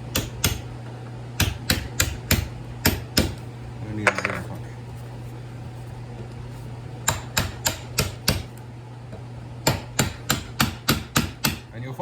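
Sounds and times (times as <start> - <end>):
steady low hum: 0.0 - 12.0
hammer striking steel punch: 0.1 - 0.7, 1.4 - 3.4, 7.0 - 8.5, 9.6 - 11.6.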